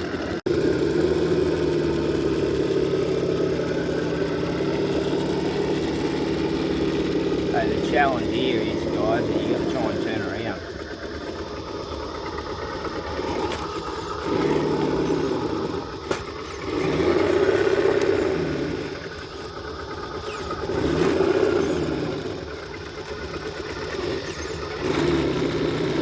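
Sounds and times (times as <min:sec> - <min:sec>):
electric motor whining: 0:00.0 - 0:26.0.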